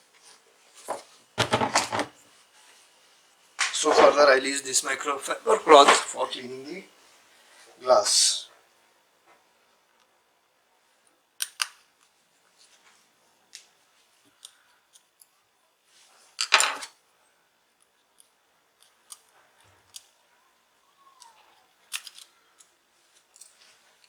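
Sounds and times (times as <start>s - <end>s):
small tools clicking and tapping: 21.2s - 23.6s.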